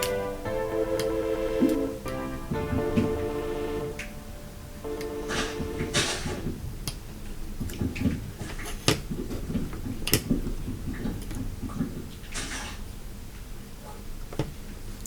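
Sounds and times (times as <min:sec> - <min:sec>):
sustained music tones: 0:00.0 - 0:06.4.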